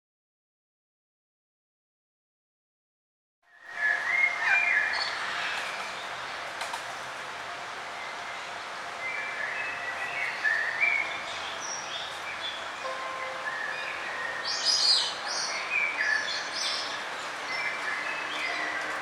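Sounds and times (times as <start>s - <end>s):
steady background hiss: 3.6s - 18.6s
birds chirping: 8.0s - 19.0s.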